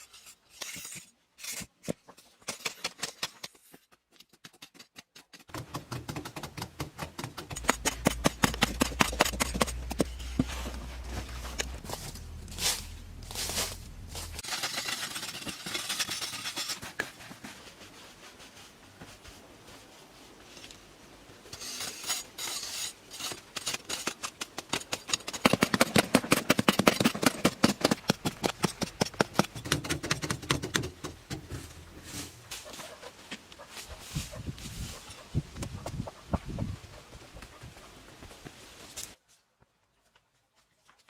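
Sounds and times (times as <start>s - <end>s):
scraping strokes: 7.4s - 20.8s, 21.5s - 24.4s.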